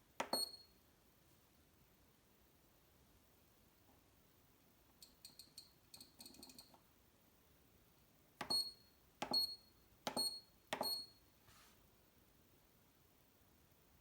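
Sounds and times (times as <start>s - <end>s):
timer beeping: 0.2s - 0.7s, 8.4s - 11.1s.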